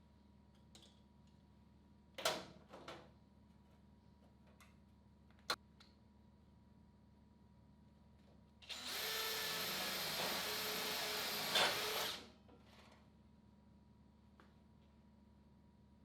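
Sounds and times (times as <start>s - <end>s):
power tool whining: 8.7s - 12.2s.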